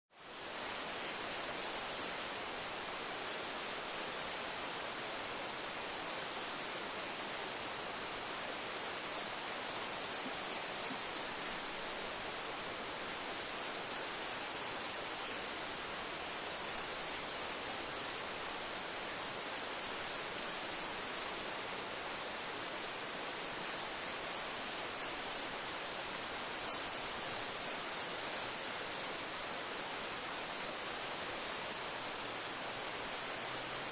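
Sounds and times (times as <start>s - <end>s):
background hiss: 0.2s - 33.9s
steady fast insect trill: 0.2s - 33.9s
insects chirping in pulsed bursts: 0.4s - 33.9s.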